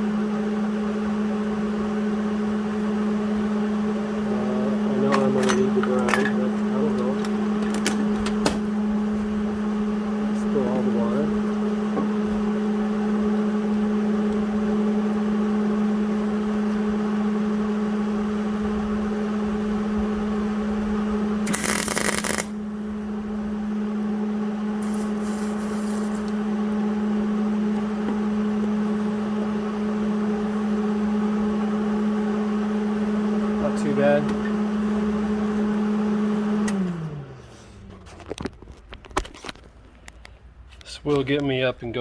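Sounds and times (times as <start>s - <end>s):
low machine hum: 0.0s - 36.1s
loud burst of hissing: 21.5s - 22.6s, 24.8s - 26.3s.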